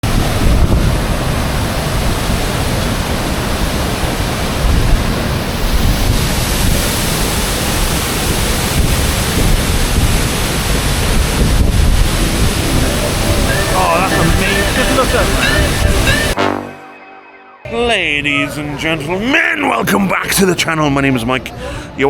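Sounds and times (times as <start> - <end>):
waterfall roaring: 6.4 - 16.4.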